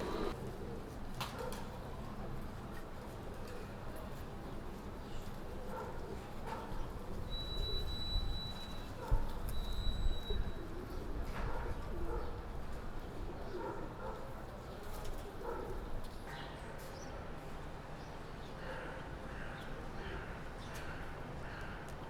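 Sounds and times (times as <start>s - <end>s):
pigeons cooing: 0.0s - 0.4s.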